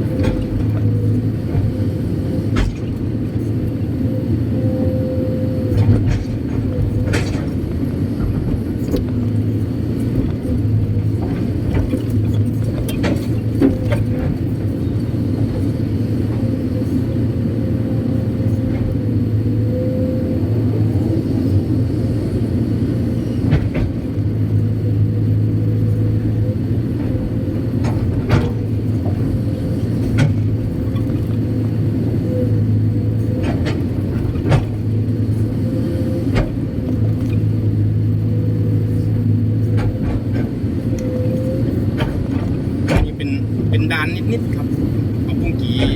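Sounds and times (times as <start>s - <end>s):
excavator engine droning: 0.0s - 45.9s.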